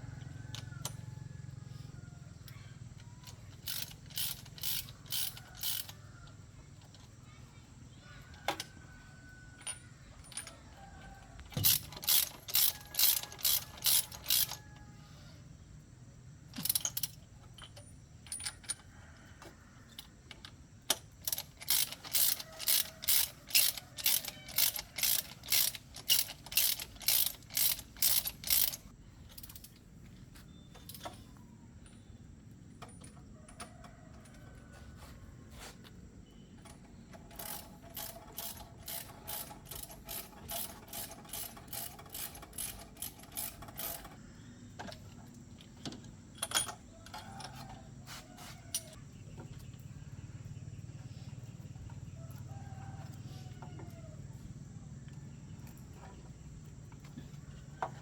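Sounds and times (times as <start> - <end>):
ratchet wrench clicking: 3.2 - 7.1, 11.4 - 14.6, 16.5 - 18.9, 19.9 - 29.7, 36.7 - 44.2.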